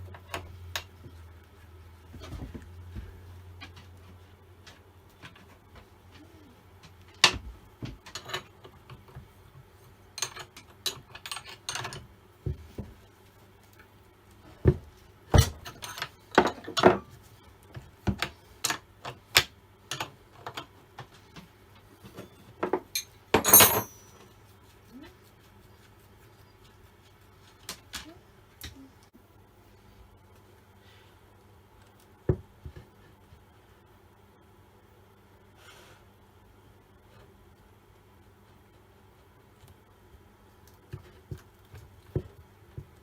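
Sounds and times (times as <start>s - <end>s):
metal parts clicking and clattering: 22.9s - 24.3s.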